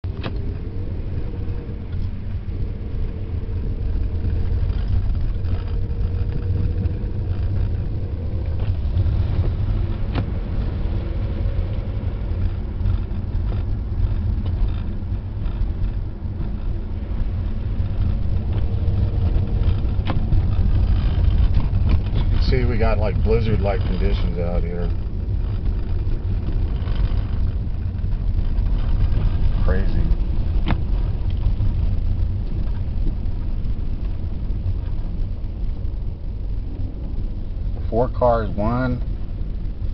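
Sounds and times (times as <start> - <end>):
car engine and road noise: 0.0 - 39.9.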